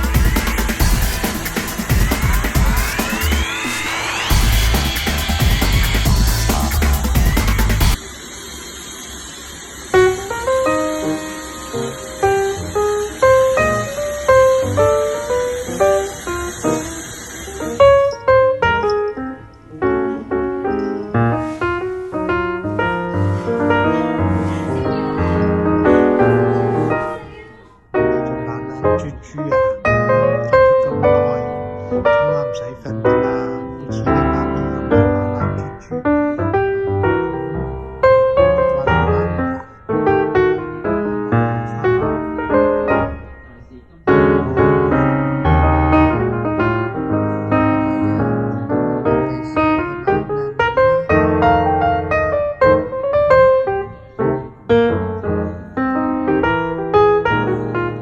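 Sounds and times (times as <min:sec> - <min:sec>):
background piano music: 0:09.8 - 0:58.0.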